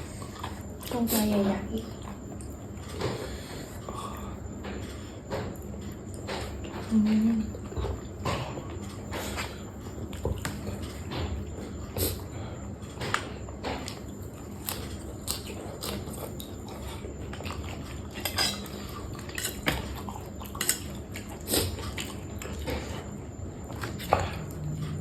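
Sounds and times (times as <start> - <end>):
chewing: 0.0 - 25.0
utensils clinking against dishes: 17.8 - 21.0.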